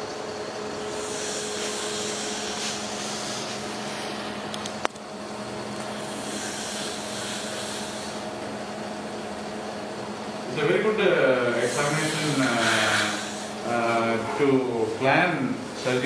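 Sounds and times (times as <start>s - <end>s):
steady hum: 0.0s - 16.0s
obstructed breathing hiss: 6.1s - 8.2s.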